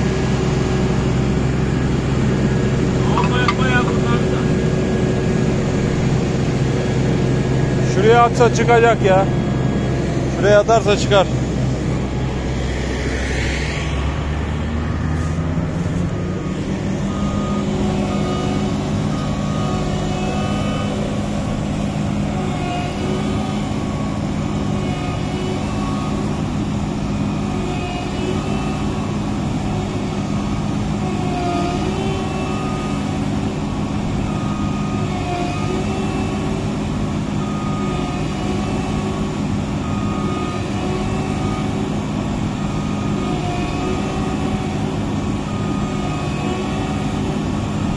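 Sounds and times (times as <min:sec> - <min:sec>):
diesel engine revving: 0:00.0 - 0:47.9
short beeps: 0:03.1 - 0:04.4.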